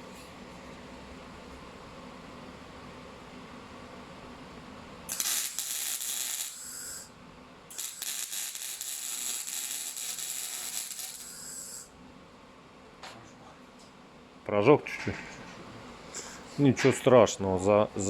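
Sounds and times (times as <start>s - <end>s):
welding arc crackling and sizzling: 5.1s - 7.1s, 7.7s - 11.9s.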